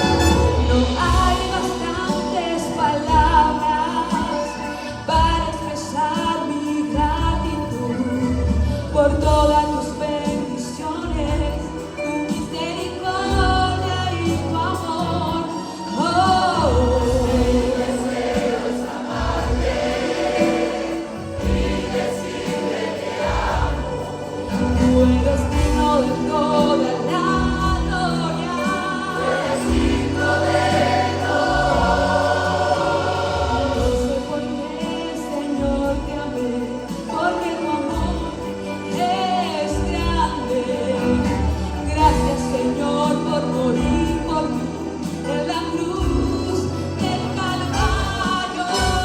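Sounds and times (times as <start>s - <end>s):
choir singing worship song: 0.0s - 49.0s.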